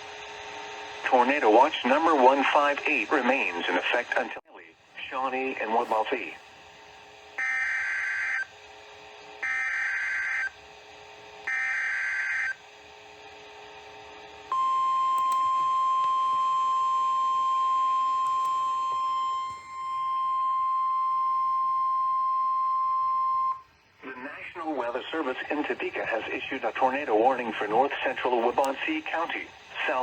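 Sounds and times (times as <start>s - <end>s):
steady warning alarm tone: 7.4s - 8.6s, 9.4s - 10.8s, 11.4s - 12.7s, 14.5s - 23.7s.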